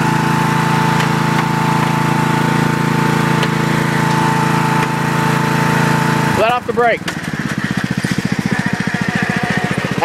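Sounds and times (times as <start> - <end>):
lawn mower engine running: 0.0 - 10.0.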